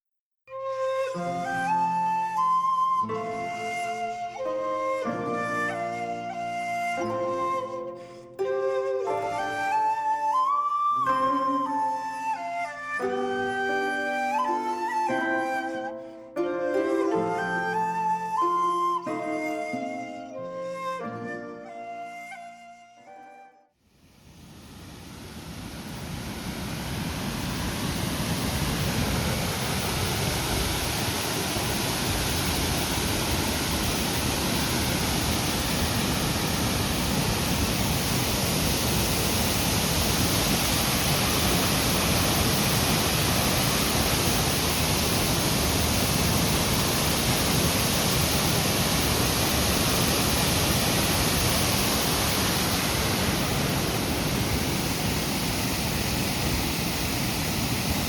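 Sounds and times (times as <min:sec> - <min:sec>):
waterfall pouring: 0:00.7 - 0:20.9, 0:26.2 - 0:58.0.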